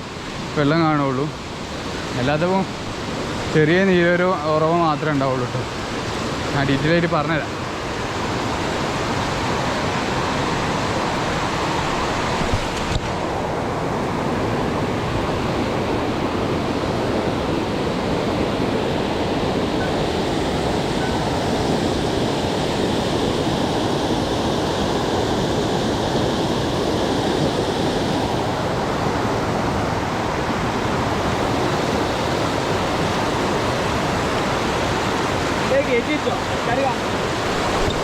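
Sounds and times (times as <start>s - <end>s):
waterfall rushing: 0.0s - 14.4s, 27.8s - 38.0s.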